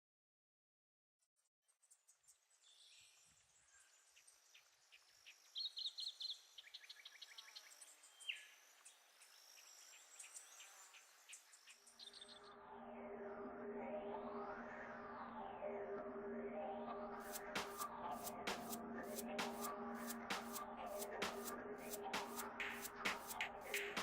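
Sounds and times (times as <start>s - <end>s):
electronic music: 13.3s - 24.0s.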